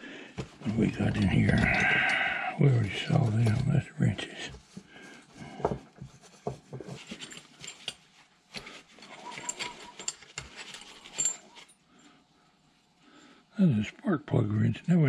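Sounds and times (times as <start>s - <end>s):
metal tools clinking in a box: 7.0s - 11.8s.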